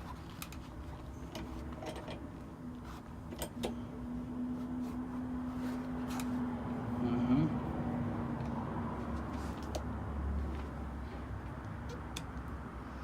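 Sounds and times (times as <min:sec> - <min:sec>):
hand tools and plastic clicking: 0:00.0 - 0:03.8, 0:11.5 - 0:12.6.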